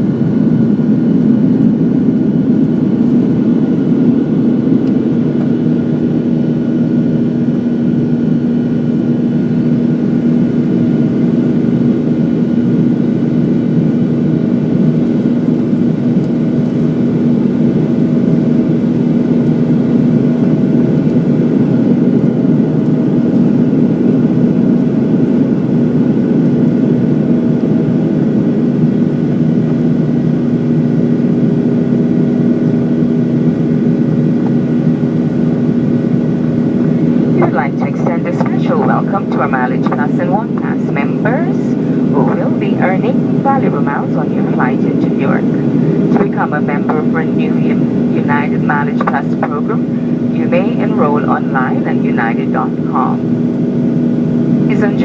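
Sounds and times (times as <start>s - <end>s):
airplane cabin engine hum: 0.0s - 55.0s
faint high steady whines: 28.8s - 55.0s.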